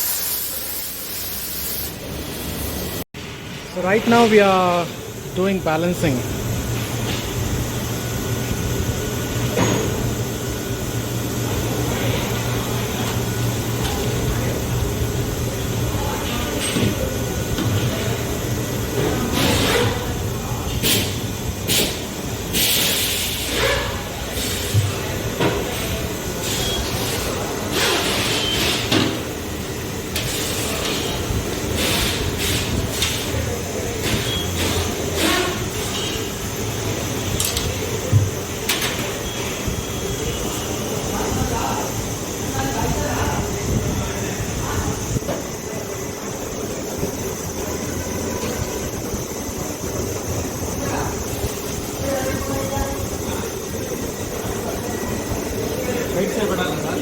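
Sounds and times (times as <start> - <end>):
short hissing spurts: 0.0 - 2.6.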